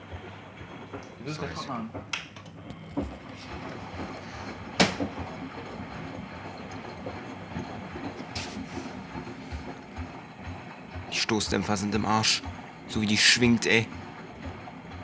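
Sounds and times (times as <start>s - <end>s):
washing machine rumbling: 0.0s - 15.0s
washing machine drum thumping: 3.0s - 15.0s.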